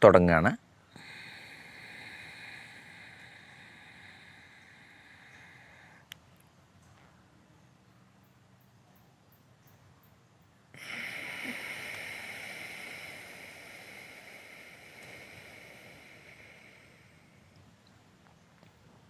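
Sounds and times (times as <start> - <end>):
hissing breath exhaled: 1.0 - 6.0, 10.8 - 17.6.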